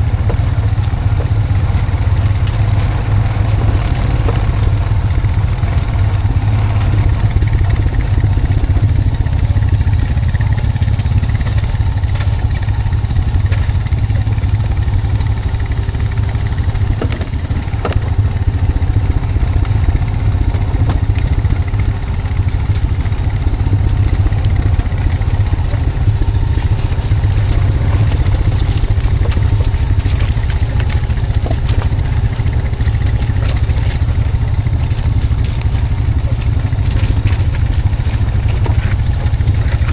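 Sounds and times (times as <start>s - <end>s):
atv engine running under load: 0.0s - 39.9s
clicks and knocks from the ride: 0.0s - 39.9s.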